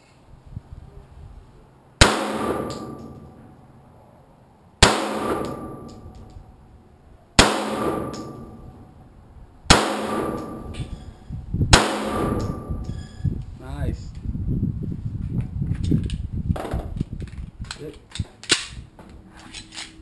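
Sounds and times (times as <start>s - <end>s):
gunshots with echo: 2.0s - 3.5s, 4.8s - 6.3s, 7.4s - 8.8s, 9.7s - 10.8s, 11.7s - 12.8s.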